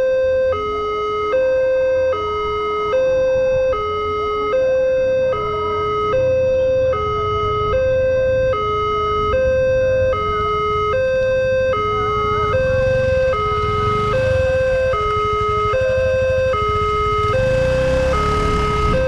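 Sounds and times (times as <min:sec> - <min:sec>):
two-tone level crossing siren: 0:00.0 - 0:19.0.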